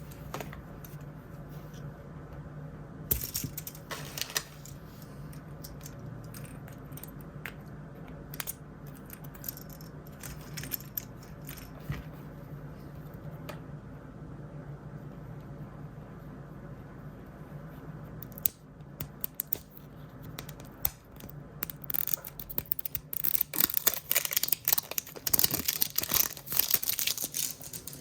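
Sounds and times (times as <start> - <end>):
steady low hum: 0.0 - 28.0
plastic toy pieces clicking: 18.2 - 28.0
packaging crinkling: 20.4 - 28.0.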